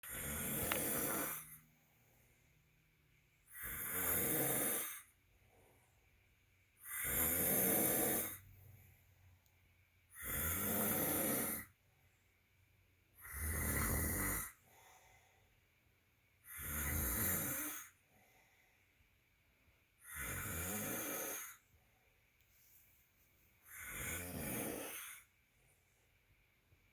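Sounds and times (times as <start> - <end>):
man snoring: 0.0 - 1.6, 3.5 - 5.1, 6.8 - 8.4, 10.1 - 11.8, 13.2 - 14.6, 16.4 - 18.0, 20.0 - 21.6, 23.7 - 25.3.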